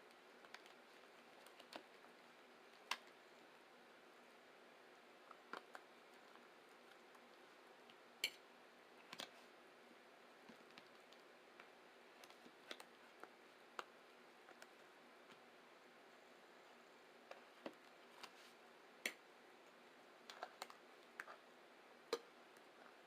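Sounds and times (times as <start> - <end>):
soft clicks of eating: 0.0 - 3.3, 5.2 - 8.4, 9.0 - 9.5, 10.4 - 15.5, 19.0 - 21.5.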